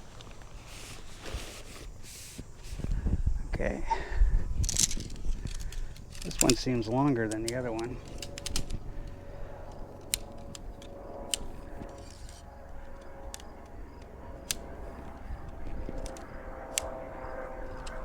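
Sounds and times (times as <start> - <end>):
tent poles clicking: 4.6 - 17.0.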